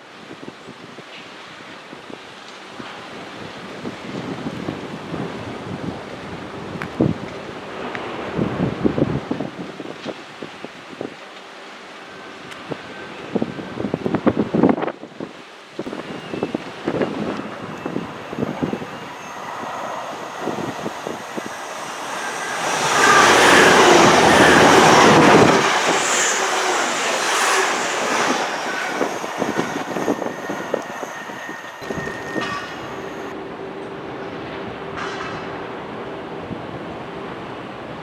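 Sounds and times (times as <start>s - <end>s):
train wheels clattering: 17.3s - 33.3s.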